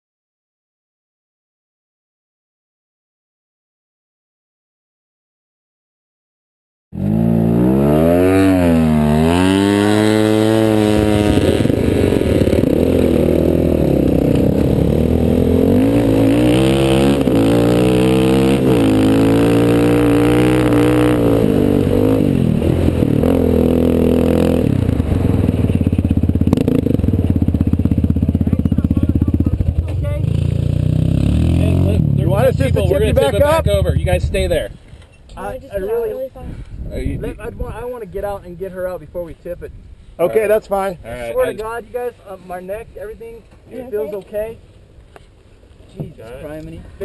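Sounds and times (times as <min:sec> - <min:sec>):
off-road vehicle engine revving: 0:07.0 - 0:34.6.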